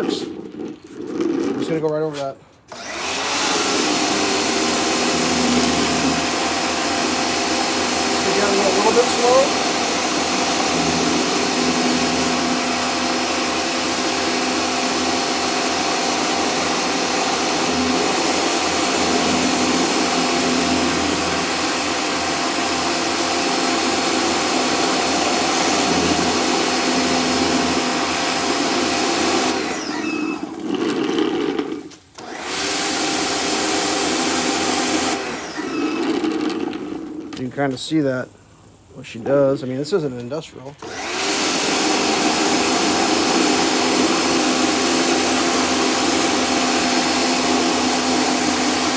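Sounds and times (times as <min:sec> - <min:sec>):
pressure washer running: 0:02.7 - 0:37.4, 0:40.8 - 0:48.9
water spraying onto concrete: 0:08.2 - 0:14.6.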